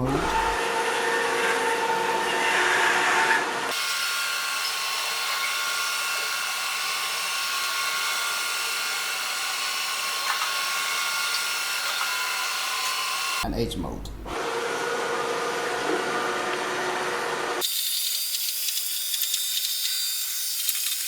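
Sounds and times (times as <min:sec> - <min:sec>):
robot vacuum whirring: 0:17.6 - 0:21.0.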